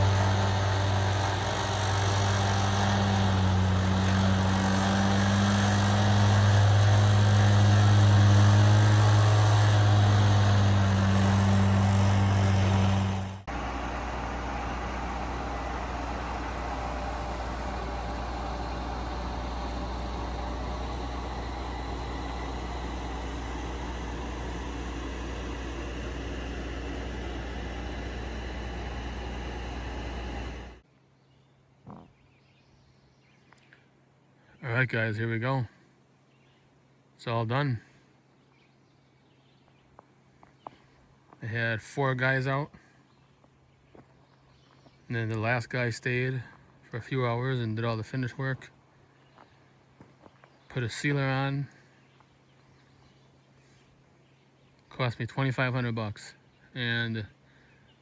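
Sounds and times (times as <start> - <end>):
large engine droning: 0.0 - 30.8
steady low hum: 0.0 - 30.8.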